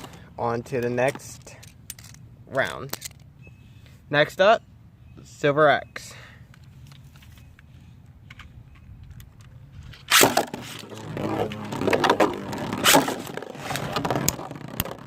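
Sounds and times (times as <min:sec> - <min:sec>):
ripcord launcher rip: 0:10.1 - 0:14.1
spinning tops whirring: 0:10.2 - 0:15.0.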